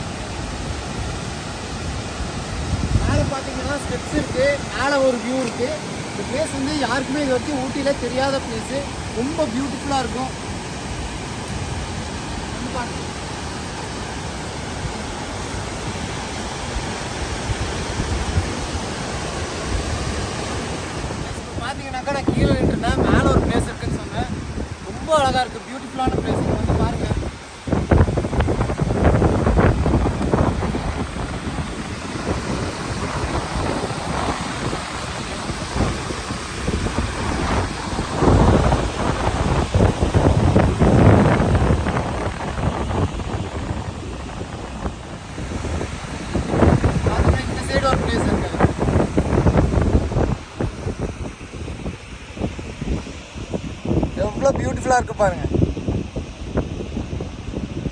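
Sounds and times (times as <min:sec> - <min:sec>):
waterfall roaring: 0:00.0 - 0:57.7
low rumbling surges: 0:00.0 - 0:57.9
wind buffeting microphone: 0:00.0 - 0:57.9.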